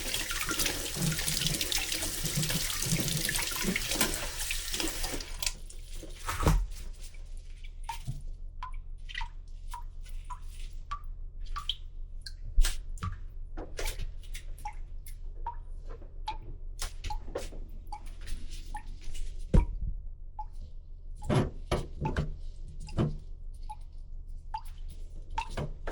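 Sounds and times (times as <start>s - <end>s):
water dripping into water: 0.0s - 5.8s, 7.8s - 12.4s, 14.6s - 15.7s, 16.3s - 17.3s, 24.5s - 25.6s.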